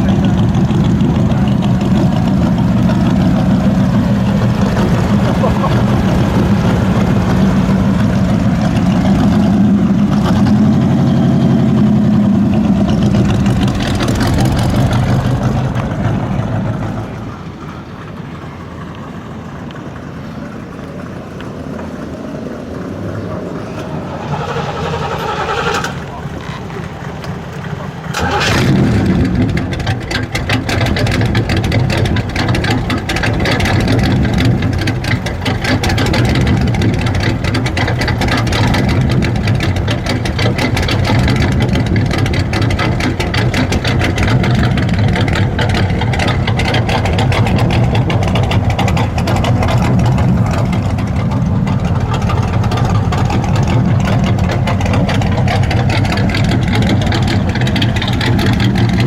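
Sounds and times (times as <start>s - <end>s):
car engine idling loudly: 0.0s - 59.0s.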